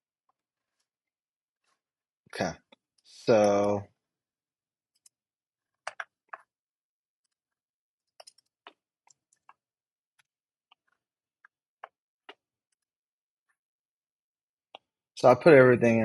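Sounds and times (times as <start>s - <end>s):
keyboard and mouse clicks: 2.7s - 3.8s, 4.9s - 6.6s, 8.0s - 9.6s.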